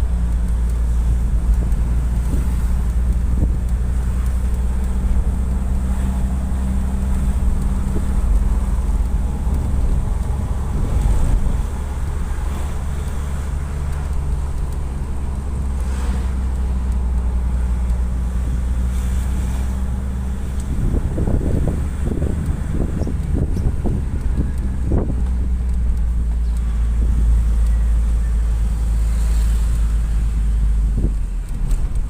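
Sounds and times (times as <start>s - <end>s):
diesel engine running: 0.0s - 32.0s
wind noise on microphone: 0.0s - 32.0s.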